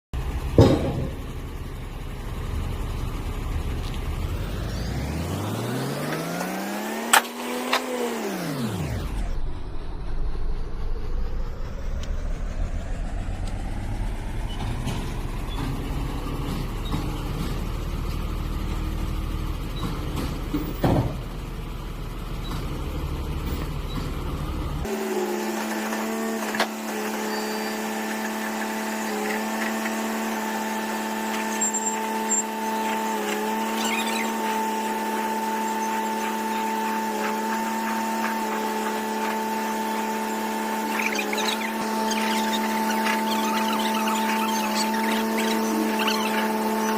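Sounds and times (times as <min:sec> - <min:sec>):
heavy truck engine rumbling: 0:00.1 - 0:46.9
machine drone with overtones: 0:00.2 - 0:46.9.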